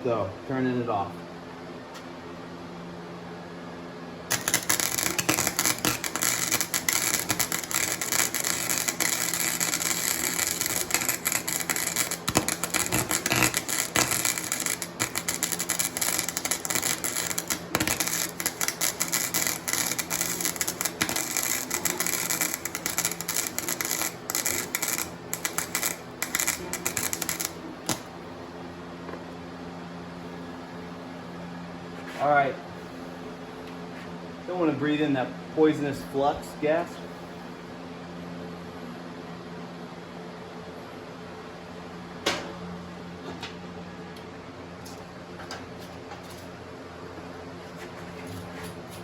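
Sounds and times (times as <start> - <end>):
welding arc crackling: 4.3 - 28.2.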